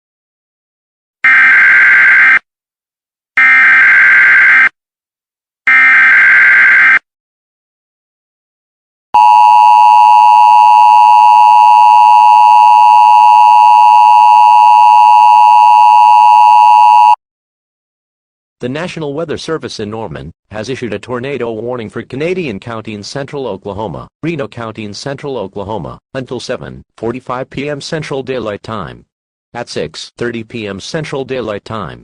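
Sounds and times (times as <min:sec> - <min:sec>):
two-tone alert signal: 0:09.2 - 0:17.2.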